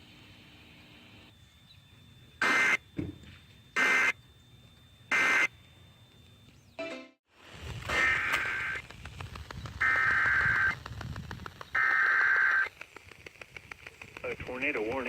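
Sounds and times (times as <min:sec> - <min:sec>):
digital data tone bursts: 0:01.3 - 0:06.1, 0:07.9 - 0:12.8.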